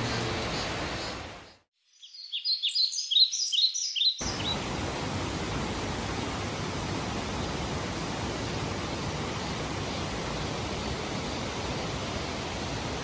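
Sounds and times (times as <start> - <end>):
mountain stream rushing: 0.0 - 1.5, 4.2 - 13.0
small bird chirping: 0.1 - 4.6.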